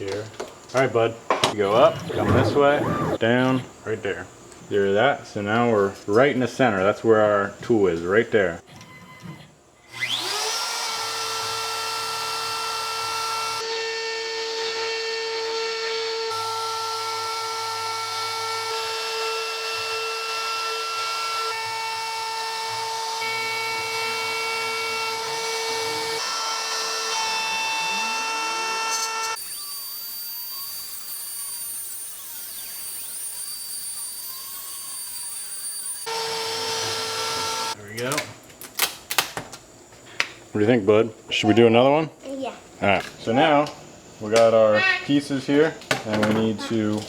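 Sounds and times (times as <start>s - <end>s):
router spindle high whine: 16.0s - 37.8s
axis motor tones stepping: 27.7s - 37.8s.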